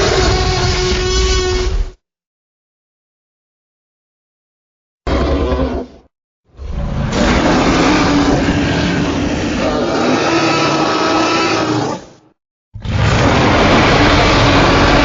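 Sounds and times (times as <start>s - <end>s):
dinosaur roar: 5.1s - 12.2s, 12.8s - 15.0s.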